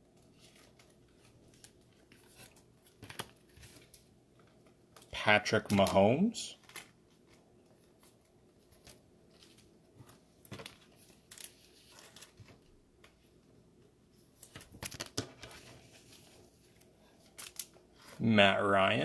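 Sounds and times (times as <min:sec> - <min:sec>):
trading cards rustling and clicking: 0:00.1 - 0:13.2.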